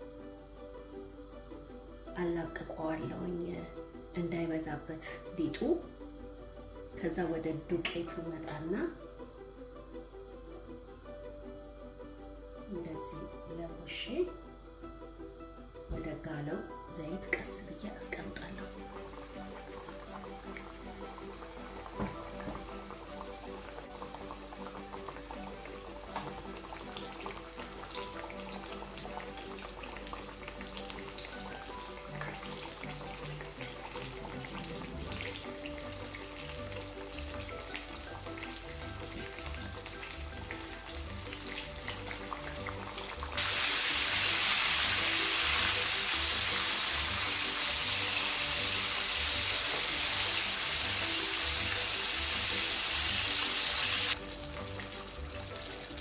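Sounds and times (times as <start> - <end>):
background music: 0.0 - 56.0
loud dense hissing sizzle: 0.0 - 56.0
fish frying in hot oil: 17.8 - 56.0.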